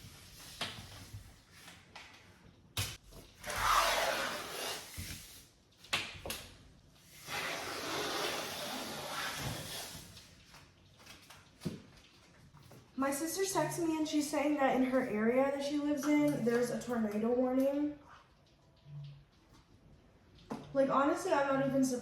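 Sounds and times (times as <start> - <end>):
adhesive tape ripping off roll: 2.8 - 5.6, 7.1 - 11.6.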